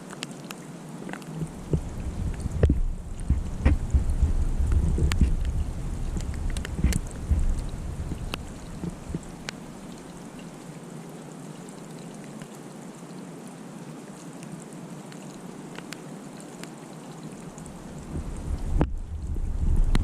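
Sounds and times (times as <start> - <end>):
snowstorm hiss: 0.7 - 11.0, 17.3 - 20.0
wind rumble on microphone: 1.4 - 10.1, 17.6 - 20.0.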